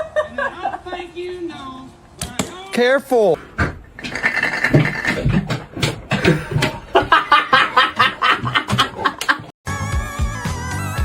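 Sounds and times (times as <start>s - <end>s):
person laughing: 6.2s - 9.5s.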